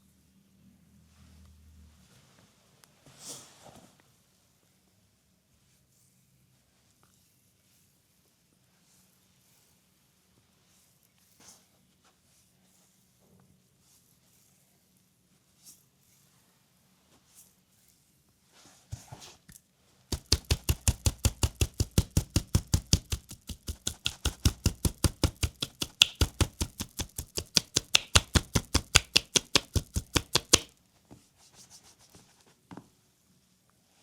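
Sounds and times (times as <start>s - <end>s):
hands slapping a leg: 20.1s - 30.7s
skin rubbing: 20.1s - 30.7s.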